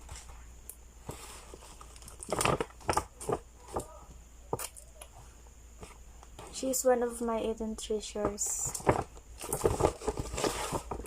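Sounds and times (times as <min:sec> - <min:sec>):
gift wrapping crinkling and tearing: 0:01.5 - 0:03.9, 0:08.7 - 0:11.0.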